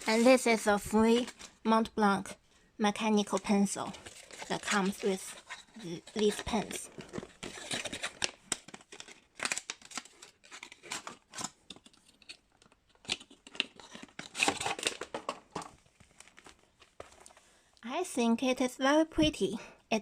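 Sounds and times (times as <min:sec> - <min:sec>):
wrapping crinkling and tearing: 0:00.0 - 0:01.7, 0:03.3 - 0:17.4.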